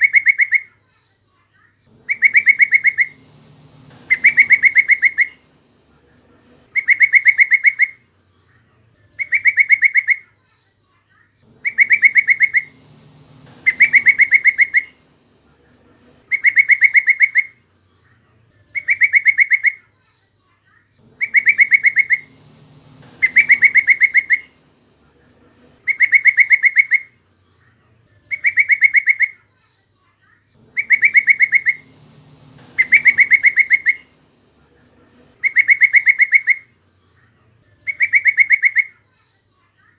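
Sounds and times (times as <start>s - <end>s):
bird chattering trill: 0.0s - 0.7s, 1.9s - 8.1s, 9.2s - 10.3s, 11.5s - 17.6s, 18.7s - 19.8s, 21.0s - 29.4s, 30.6s - 39.0s.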